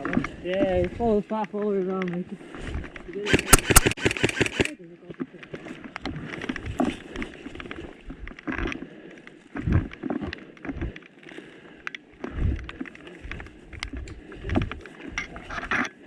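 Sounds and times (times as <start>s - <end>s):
footsteps on woodland path: 5.6s - 15.5s.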